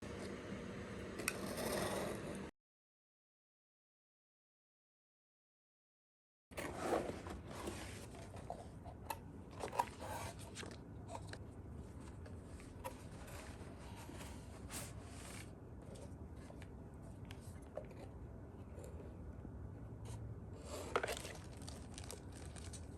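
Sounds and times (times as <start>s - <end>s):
packaging rustling and scraping: 6.6s - 16.7s, 20.6s - 22.9s.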